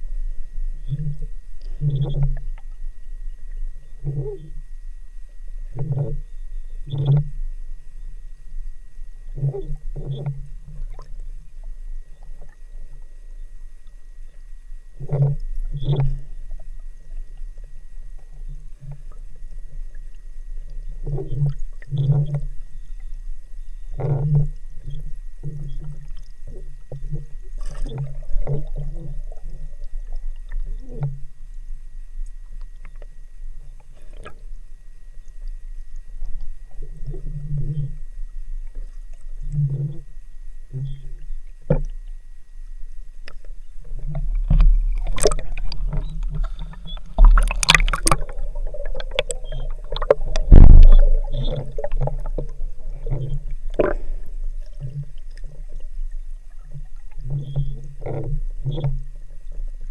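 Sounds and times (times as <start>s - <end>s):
underwater gurgling and bubbling: 0.0s - 59.9s
dull underwater knocks: 43.3s - 55.0s.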